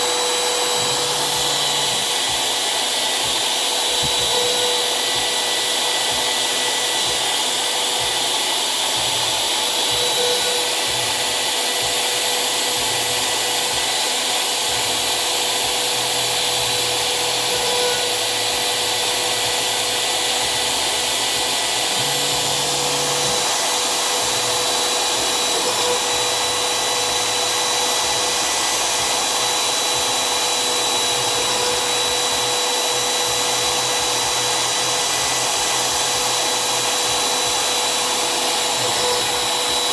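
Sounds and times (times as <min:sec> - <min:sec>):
low motor tones: 0:00.0 - 0:08.2, 0:21.4 - 0:39.9
cnc router spindle whine: 0:00.0 - 0:39.9.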